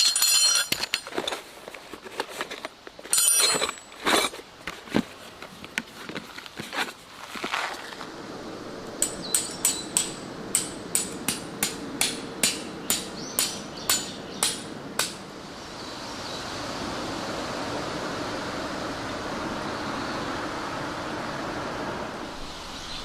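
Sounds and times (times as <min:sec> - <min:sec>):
hammer striking metal tent stake: 0:09.0 - 0:15.2.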